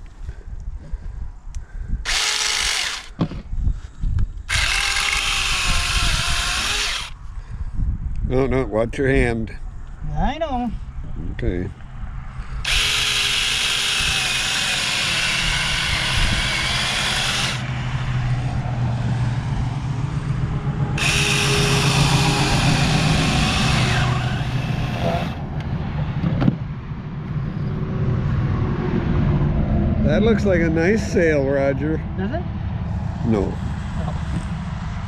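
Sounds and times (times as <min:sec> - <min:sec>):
small chainsaw cutting: 0:02.0 - 0:03.2, 0:04.5 - 0:07.2, 0:12.6 - 0:17.7, 0:21.0 - 0:25.4.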